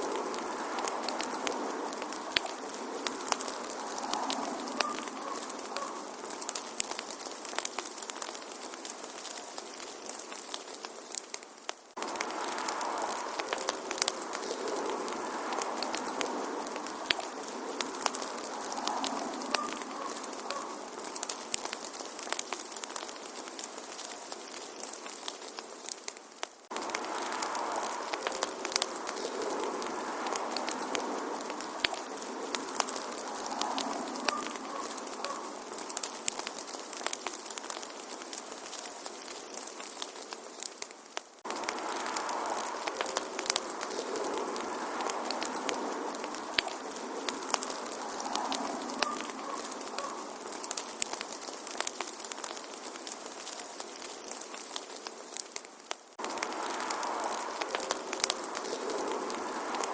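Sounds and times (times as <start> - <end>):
fireplace fire crackling: 0.0 - 59.9.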